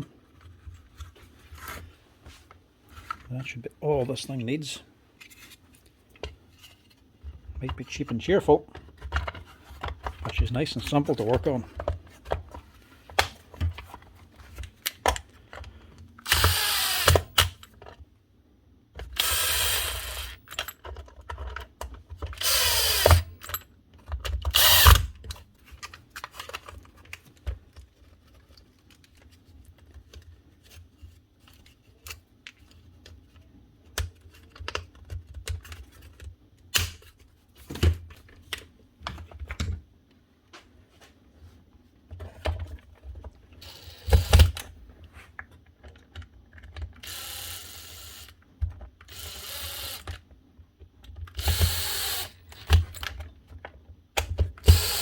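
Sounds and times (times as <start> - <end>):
tool handling clicks and knocks: 5.2 - 18.0, 20.5 - 30.3
strimmer motor whirring: 16.3 - 17.4, 19.2 - 20.4, 22.4 - 23.3, 49.1 - 50.1, 51.4 - 52.7, 54.6 - 55.0.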